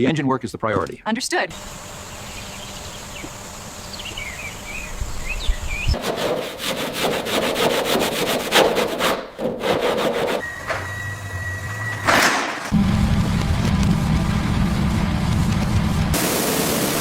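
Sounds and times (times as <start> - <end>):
hand tool rasping strokes: 6.0 - 10.4.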